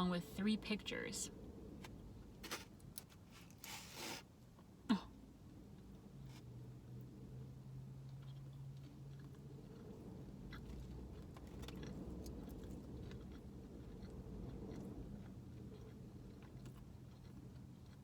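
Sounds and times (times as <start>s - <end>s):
person chewing food: 8.0s - 18.0s.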